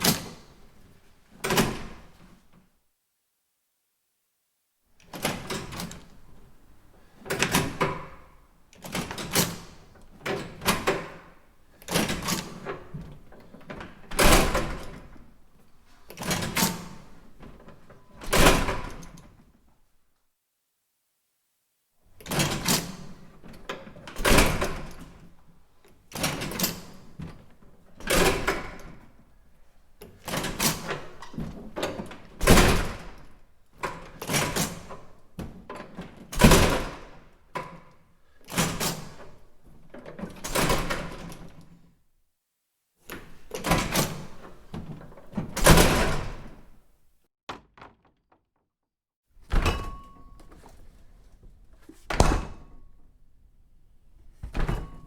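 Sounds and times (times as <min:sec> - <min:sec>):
door banging shut: 0:47.5 - 0:48.4, 0:52.1 - 0:52.8.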